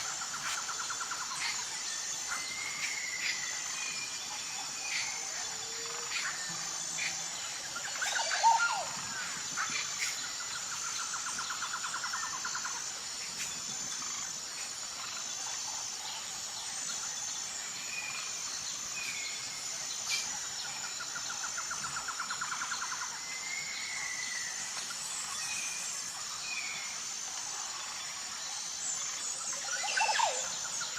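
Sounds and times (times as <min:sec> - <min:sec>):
pulsing insect chorus: 0:00.0 - 0:30.9
birds chirping and whistling: 0:06.1 - 0:10.2.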